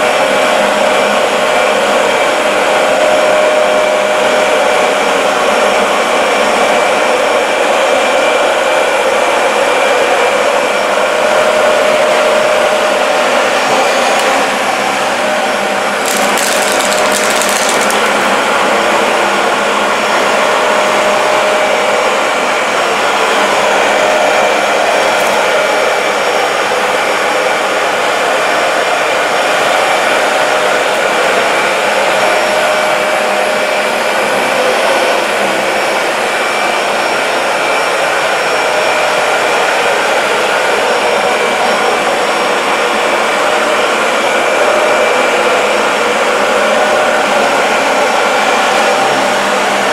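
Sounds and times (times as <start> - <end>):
vacuum cleaner motor whine: 0.0 - 49.9
crackling burst: 16.0 - 18.3.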